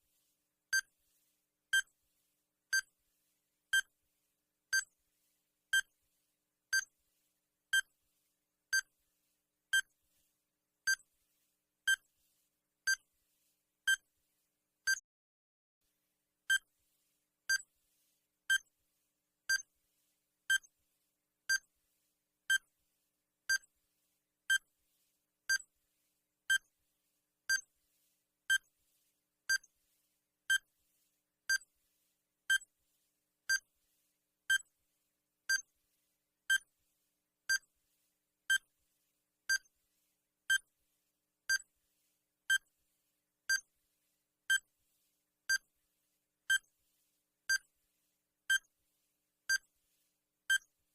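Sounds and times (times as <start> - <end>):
timer beep-ticks: 16.5 - 16.7, 23.5 - 23.7, 29.5 - 29.7, 35.5 - 35.7, 39.5 - 39.7, 43.5 - 43.7, 45.5 - 45.7, 46.5 - 46.7, 47.5 - 47.7, 48.5 - 48.7, 49.5 - 49.7, 50.5 - 50.7.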